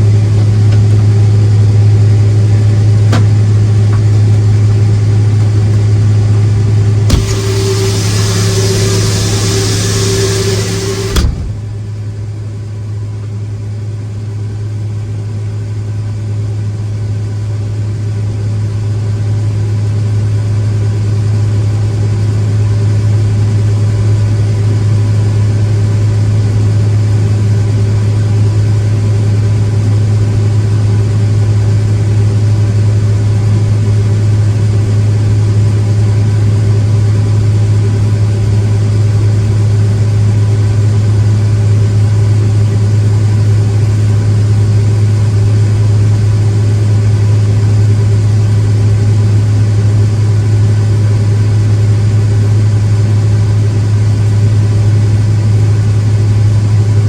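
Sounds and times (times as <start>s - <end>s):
heavy machinery engine running: 7.0s - 12.0s.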